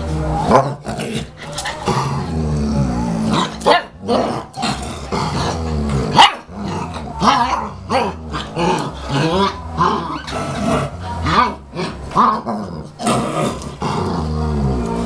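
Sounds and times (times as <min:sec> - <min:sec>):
dogs growling: 0:00.0 - 0:15.0
dog barking: 0:06.2 - 0:06.4.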